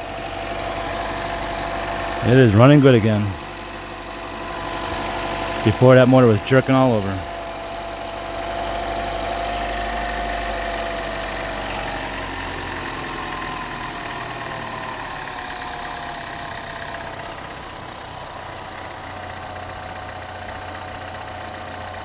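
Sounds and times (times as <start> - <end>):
car engine idling: 0.0 - 16.4.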